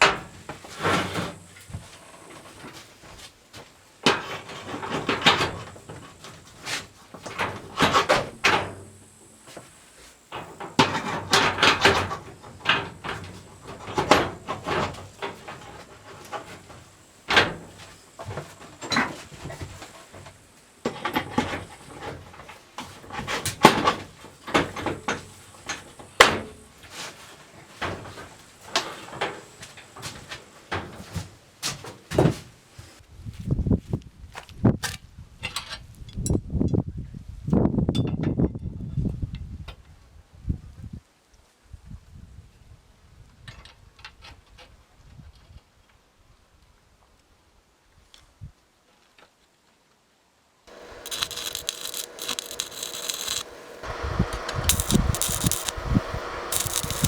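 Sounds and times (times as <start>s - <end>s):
parts scraping: 50.7s - 57.0s.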